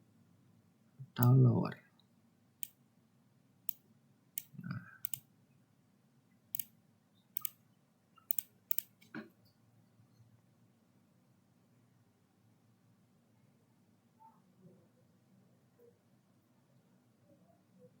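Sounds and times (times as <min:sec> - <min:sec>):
computer mouse clicking: 0:04.4 - 0:05.2, 0:07.4 - 0:07.6, 0:08.3 - 0:09.2.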